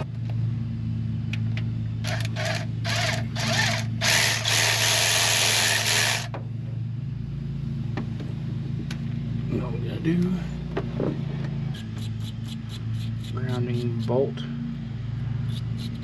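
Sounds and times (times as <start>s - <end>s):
steady low hum: 0.0s - 16.0s
handheld power tool running: 2.0s - 6.3s.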